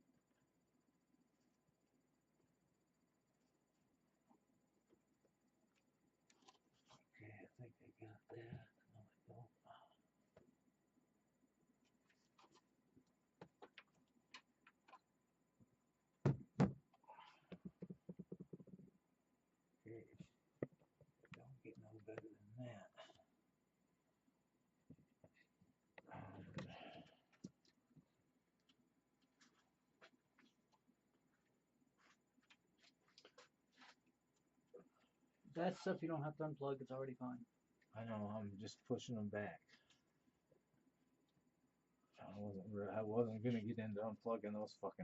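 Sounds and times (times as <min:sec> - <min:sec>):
clicks taps and scrapes of hands: 0:13.4 - 0:15.1, 0:17.5 - 0:19.0
loud knock: 0:16.3 - 0:16.8.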